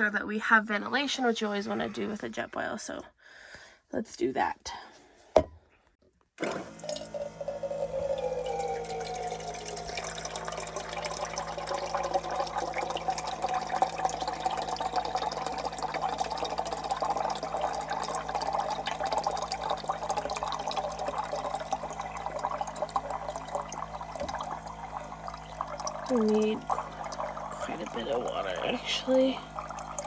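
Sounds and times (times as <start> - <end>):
water pouring into cup: 6.4 - 30.0.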